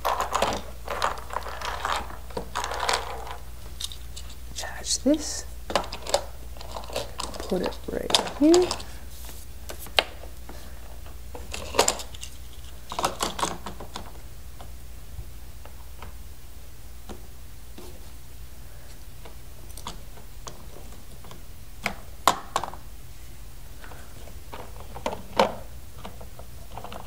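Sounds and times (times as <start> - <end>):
plastic toy pieces clicking: 0.0 - 4.3
low steady hum: 0.0 - 27.0.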